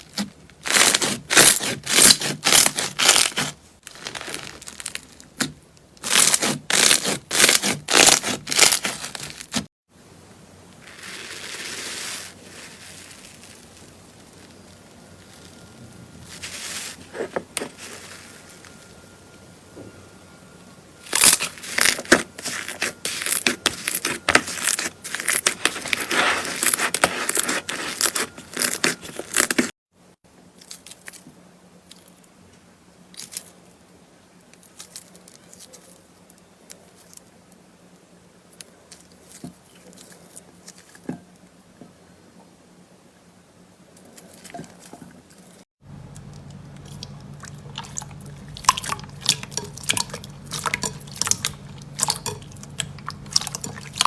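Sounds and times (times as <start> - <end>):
slime crackling and popping: 0.0 - 9.6.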